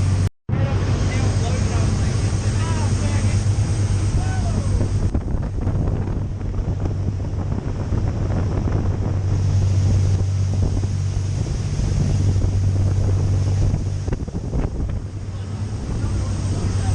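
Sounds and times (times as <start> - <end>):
boat engine running: 0.0 - 16.9
rushing water: 0.0 - 16.9
wind buffeting microphone: 0.0 - 16.9.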